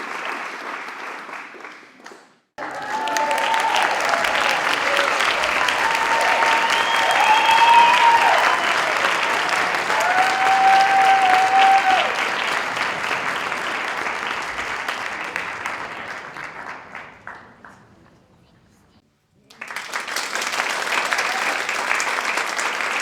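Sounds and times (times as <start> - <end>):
audience applauding: 0.0 - 2.0, 2.6 - 18.5, 19.5 - 23.0
long held whistles: 5.1 - 12.2.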